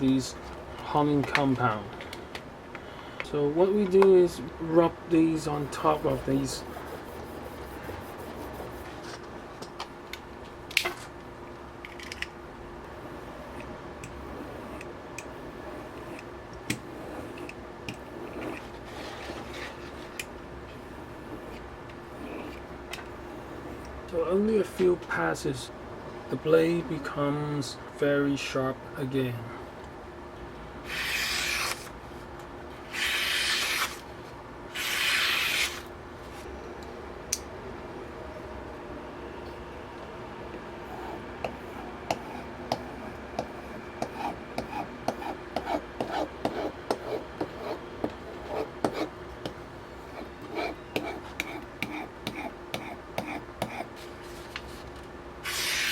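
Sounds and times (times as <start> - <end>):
rubbing on leather strop: 5.5 - 9.2.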